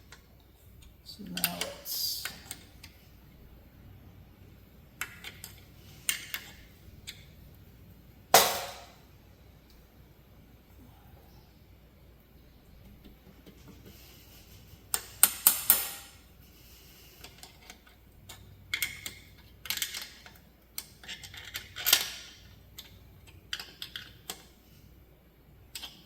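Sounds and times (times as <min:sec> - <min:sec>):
metal clanking on steel: 0:08.4 - 0:08.9.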